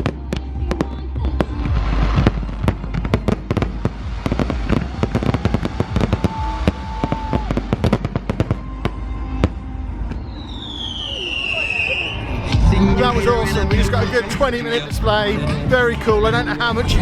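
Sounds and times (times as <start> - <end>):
fireworks bangs and crackles: 0.0 - 12.7
low rumble: 0.0 - 17.0.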